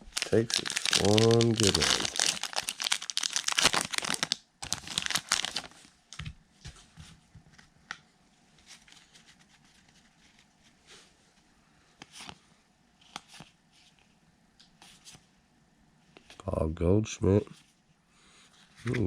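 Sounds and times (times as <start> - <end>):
cards rustling: 0.0 - 5.8
wrapper crinkling and tearing: 0.0 - 5.9.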